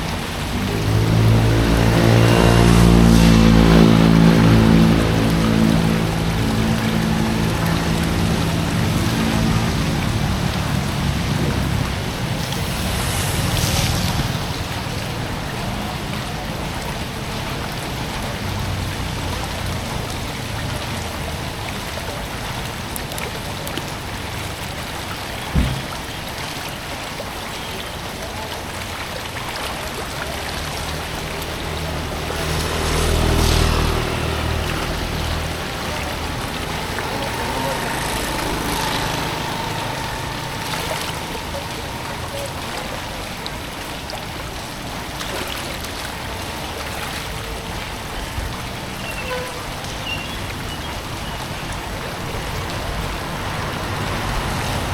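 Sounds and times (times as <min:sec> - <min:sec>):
low engine-like rumble: 0:00.0 - 0:26.1, 0:29.9 - 0:54.9
flowing water rushing: 0:00.0 - 0:54.9
dull knock: 0:25.5 - 0:25.9.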